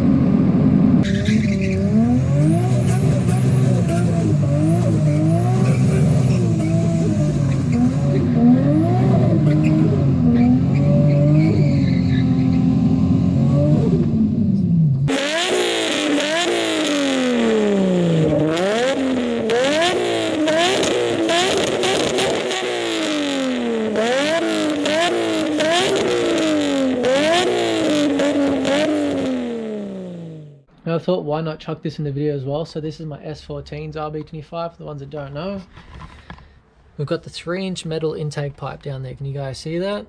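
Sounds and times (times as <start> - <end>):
car engine revving: 0.0 - 30.7.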